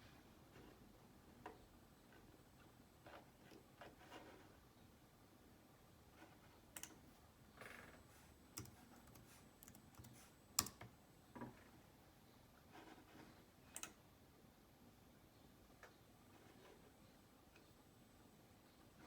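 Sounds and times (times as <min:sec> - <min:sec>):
faint clicks and light taps: 0:08.5 - 0:11.7, 0:13.7 - 0:14.0.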